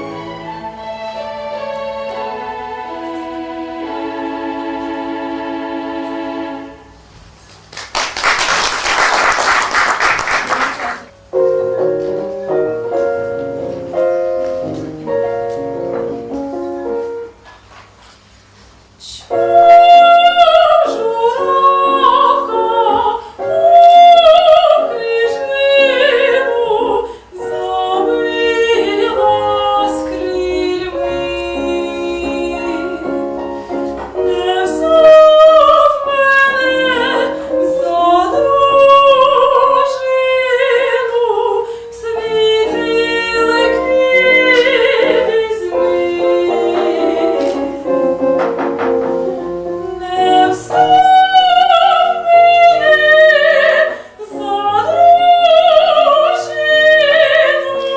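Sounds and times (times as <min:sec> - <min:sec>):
piano accompaniment: 0:00.0 - 0:57.9
woman singing operatically: 0:19.0 - 0:33.3, 0:34.2 - 0:47.6, 0:49.8 - 0:57.9.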